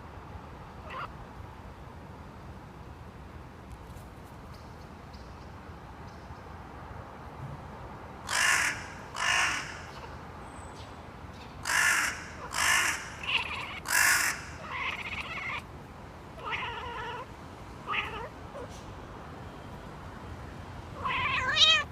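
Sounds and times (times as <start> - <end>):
cat meowing: 0.8 - 1.1, 12.5 - 15.7, 16.4 - 18.7, 21.0 - 21.9
crows cawing: 8.3 - 10.2, 11.6 - 15.6.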